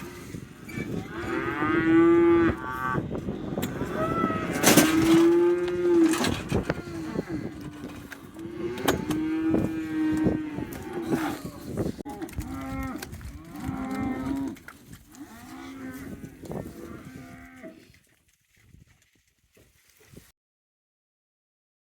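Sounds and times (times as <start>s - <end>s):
cattle mooing: 0.0s - 11.5s, 12.1s - 14.6s, 15.2s - 17.8s.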